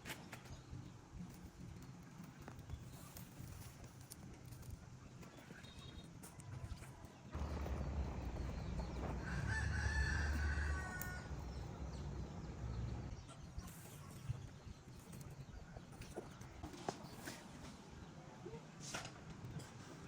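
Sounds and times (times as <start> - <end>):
low rumble: 7.4 - 13.1
rooster crowing: 8.6 - 12.2.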